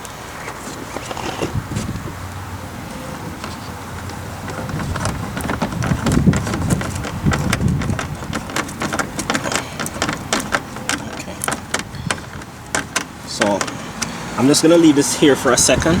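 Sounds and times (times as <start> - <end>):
clicks taps and rattles of handling: 3.1 - 14.2.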